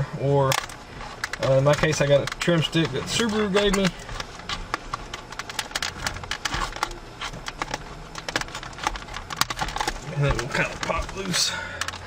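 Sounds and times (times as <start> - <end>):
plastic trim clicks and scrapes: 0.5 - 12.0.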